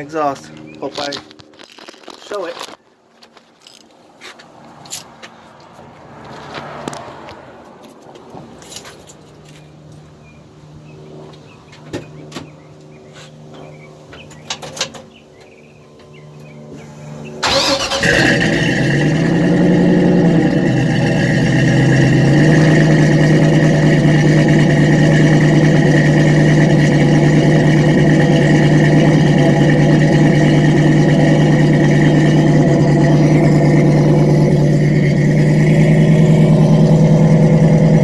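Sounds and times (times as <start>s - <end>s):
truck engine starting and idling: 17.4s - 38.0s.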